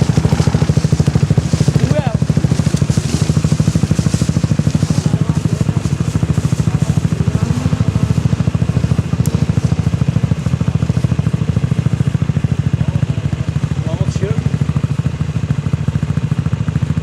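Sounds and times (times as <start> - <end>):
atv engine idling: 0.0 - 17.0.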